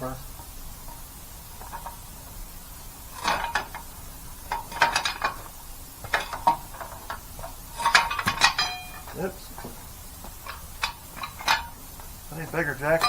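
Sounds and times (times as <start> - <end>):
metal tools clanking: 0.0 - 2.3, 3.0 - 13.0.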